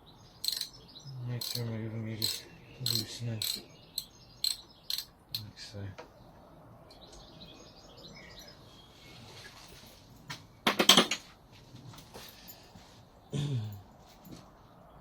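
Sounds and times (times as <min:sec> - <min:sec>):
metal tools scraping: 0:00.4 - 0:00.8, 0:01.4 - 0:05.5
sharp metallic clicks and clinks: 0:00.4 - 0:00.8, 0:01.4 - 0:05.5.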